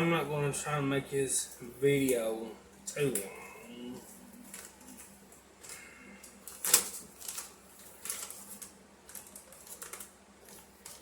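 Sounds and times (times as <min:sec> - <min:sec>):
fan humming: 0:00.0 - 0:11.0
paper crackling and rustling: 0:04.0 - 0:11.0.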